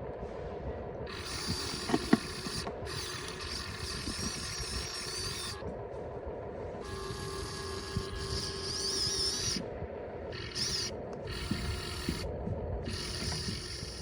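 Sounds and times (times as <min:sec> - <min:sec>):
electric hydraulic pump whining: 0:01.1 - 0:05.7, 0:06.8 - 0:09.7, 0:10.3 - 0:14.0.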